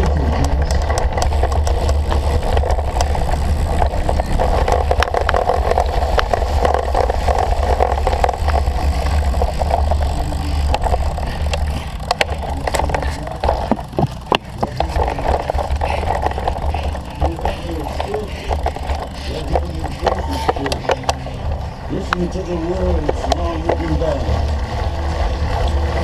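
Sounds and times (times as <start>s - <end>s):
bike rattling and clicking: 0.0s - 26.0s
wind rumble on microphone: 0.0s - 26.0s.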